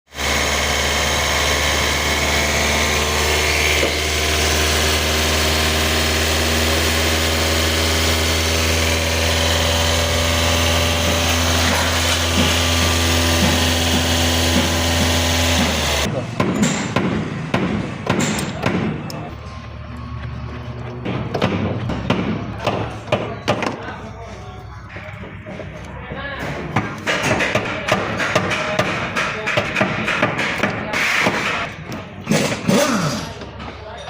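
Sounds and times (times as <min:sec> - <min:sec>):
engine running with low hum: 0:00.1 - 0:22.5.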